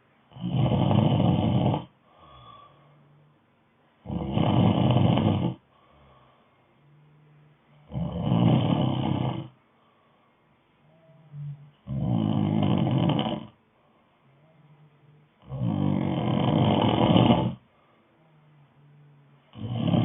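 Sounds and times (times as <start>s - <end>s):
quiet breathing: 0.0s - 20.0s
loud snoring: 0.3s - 2.0s, 4.0s - 5.6s, 7.8s - 9.6s, 11.3s - 13.6s, 15.4s - 17.6s, 19.5s - 20.0s.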